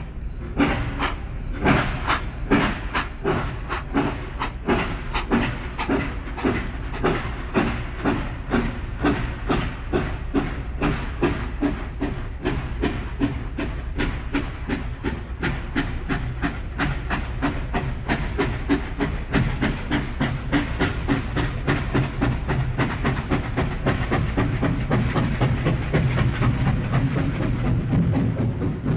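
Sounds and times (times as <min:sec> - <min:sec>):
rhythmic chugging with hiss: 0:00.0 - 0:28.9.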